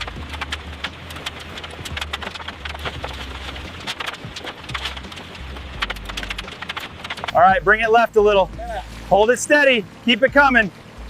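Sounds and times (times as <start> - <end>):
wood and debris knocking: 0.0 - 7.8
low steady rumble: 0.0 - 11.0.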